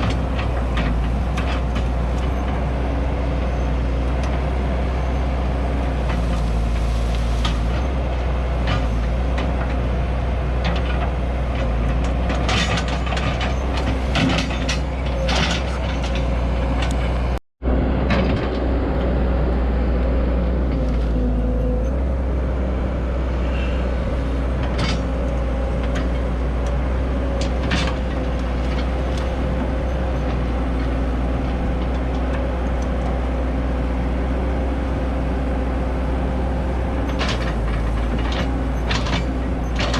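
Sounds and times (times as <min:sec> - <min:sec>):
diesel engine with hydraulic whine: 0:00.0 - 0:39.9
metallic clanks and knocks: 0:10.6 - 0:17.4, 0:24.5 - 0:26.6, 0:37.1 - 0:39.9.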